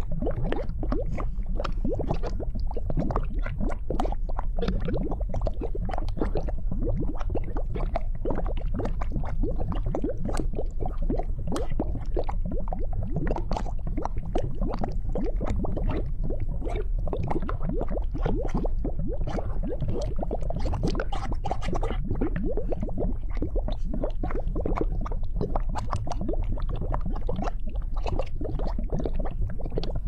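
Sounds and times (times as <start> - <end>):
lava bubbling and popping: 0.0 - 30.0.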